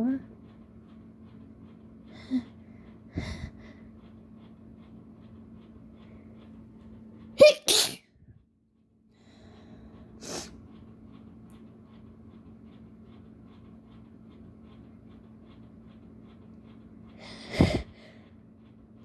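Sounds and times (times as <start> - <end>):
person sneezing: 7.4 - 8.0
soft breathy puff: 17.2 - 18.1.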